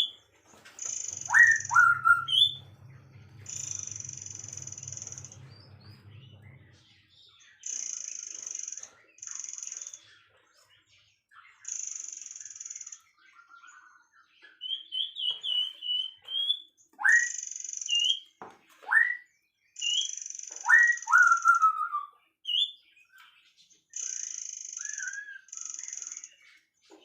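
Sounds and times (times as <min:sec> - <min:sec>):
warbling birdsong: 0:00.0 - 0:27.0
rising whistled notes: 0:01.1 - 0:07.0.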